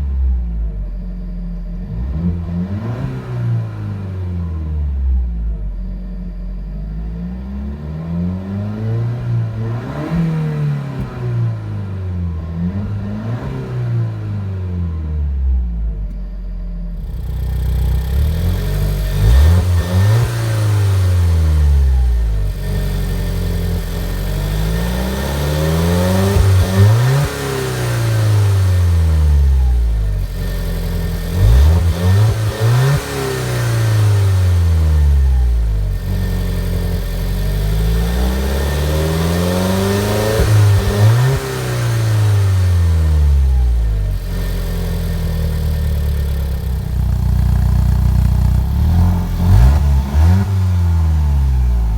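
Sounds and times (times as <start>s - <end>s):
car engine revving: 0.0s - 51.9s.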